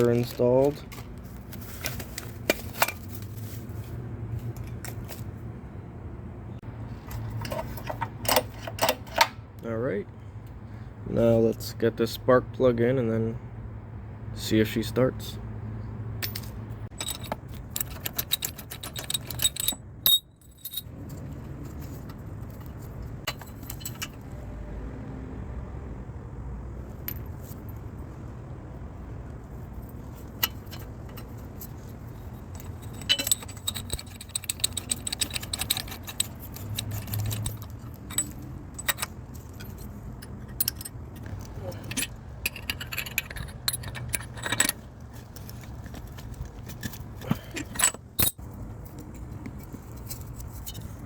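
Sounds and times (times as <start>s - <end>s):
metal tools clinking on engine: 0.0s - 3.7s, 7.0s - 9.4s, 16.2s - 24.4s, 29.8s - 51.0s.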